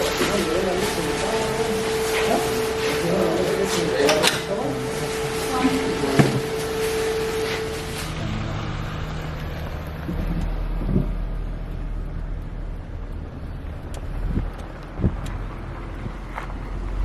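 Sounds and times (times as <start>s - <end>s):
steady high tone: 0.0s - 9.2s
engine droning: 0.0s - 17.0s.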